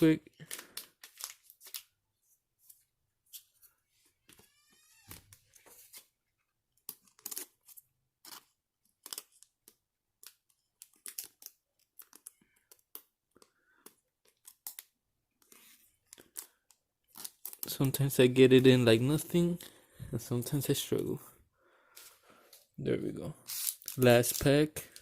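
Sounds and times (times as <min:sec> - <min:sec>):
plastic sleeve rustling and crinkling: 0:23.4 - 0:25.0.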